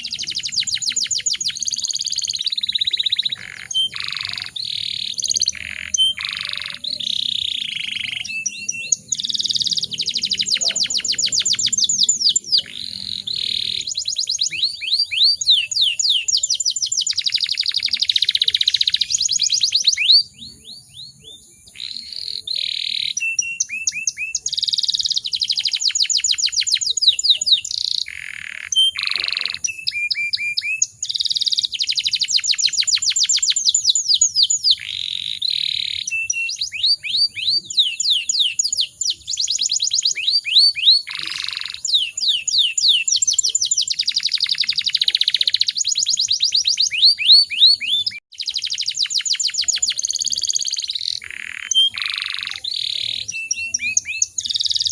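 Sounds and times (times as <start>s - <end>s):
canary singing trills: 0.0s - 54.9s.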